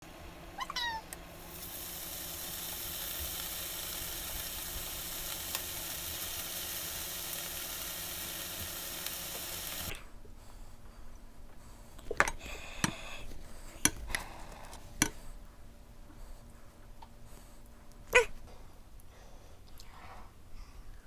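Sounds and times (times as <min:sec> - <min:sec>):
meat sizzling in a hot pan: 0:01.3 - 0:10.0.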